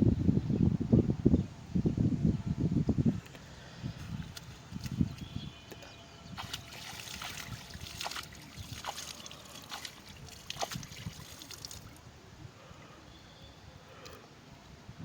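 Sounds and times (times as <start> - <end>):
water splashing and trickling: 4.0 - 12.1
sharp splashes: 6.4 - 12.0.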